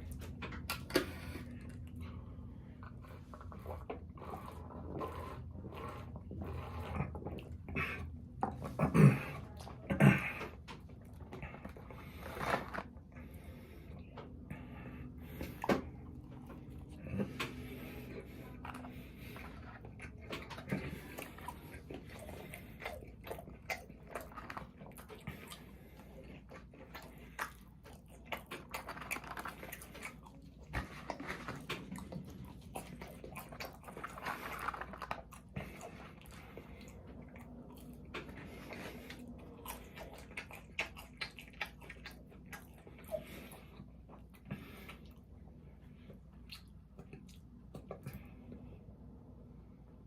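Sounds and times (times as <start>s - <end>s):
mouth clicks and smacks: 46.1s - 48.2s.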